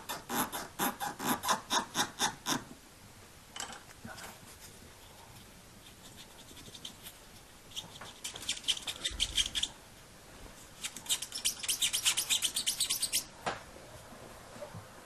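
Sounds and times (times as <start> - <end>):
wood stick scratching metal: 6.1 - 9.7, 10.8 - 13.3.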